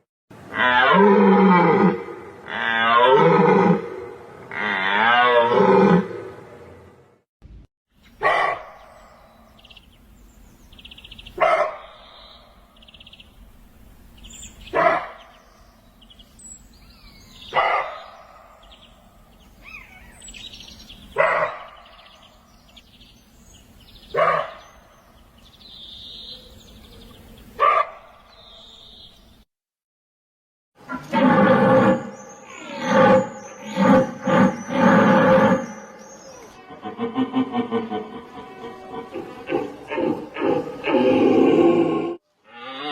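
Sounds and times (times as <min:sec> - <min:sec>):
faint chirping: 0:08.2 - 0:27.6.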